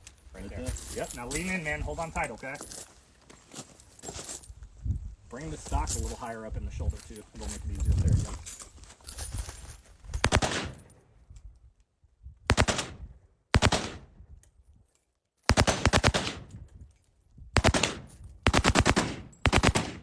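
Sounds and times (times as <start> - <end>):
automatic rifle bursts: 17.6 - 20.0.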